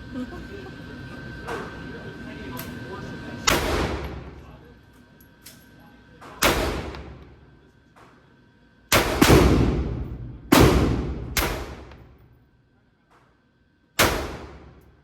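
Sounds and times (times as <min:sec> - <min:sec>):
pistol shots with long echo: 0:08.9 - 0:12.2, 0:14.0 - 0:14.8.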